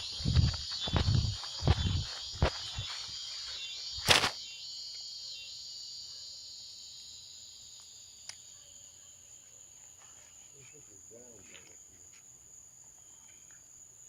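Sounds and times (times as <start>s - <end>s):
crickets chirring: 0.0s - 14.0s.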